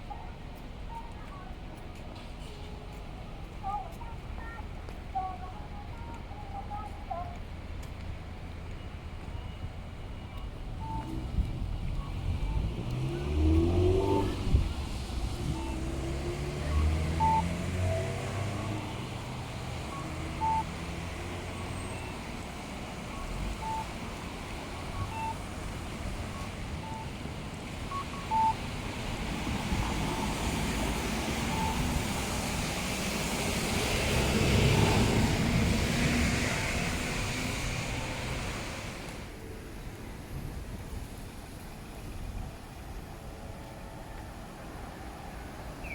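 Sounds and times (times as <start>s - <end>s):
street traffic: 0.0s - 45.9s
short electronic beep: 9.3s - 11.2s, 16.6s - 17.6s, 19.9s - 20.8s
vehicle engine pulling away: 10.6s - 39.3s.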